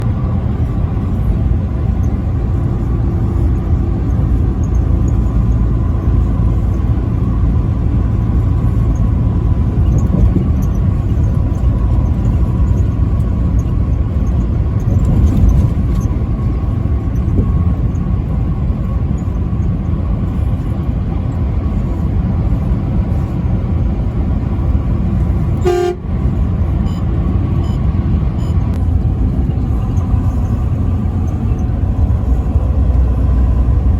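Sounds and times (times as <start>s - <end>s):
truck engine and road rumble: 0.0s - 33.9s
truck horn toot: 25.6s - 26.2s.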